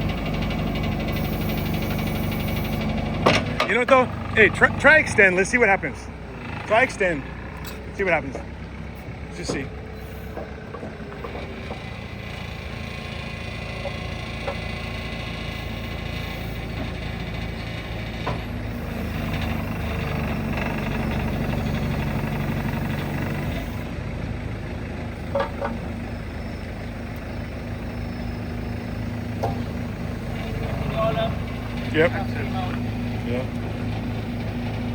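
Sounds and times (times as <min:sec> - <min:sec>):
backhoe diesel engine running: 0:00.0 - 0:34.9
metal clanks: 0:07.5 - 0:08.5.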